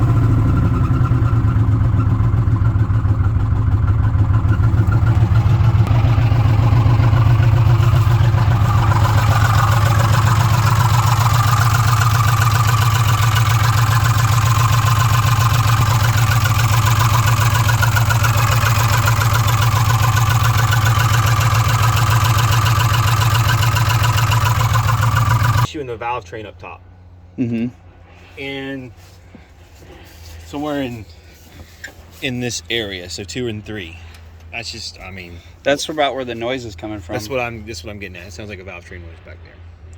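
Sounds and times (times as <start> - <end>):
engine running: 0.0 - 25.7
fast ticking clatter from engine: 2.2 - 25.7.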